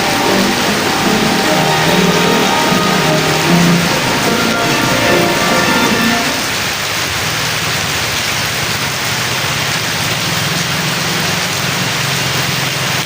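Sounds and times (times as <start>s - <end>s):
background music: 0.0s - 6.9s
heavy rain on hard surfaces: 0.0s - 13.0s.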